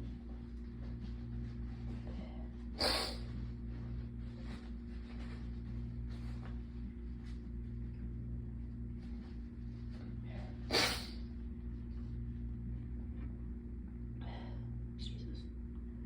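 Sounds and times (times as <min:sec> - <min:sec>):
air conditioner hum: 0:00.0 - 0:16.0
woman sneezing: 0:02.8 - 0:03.2, 0:10.7 - 0:11.2.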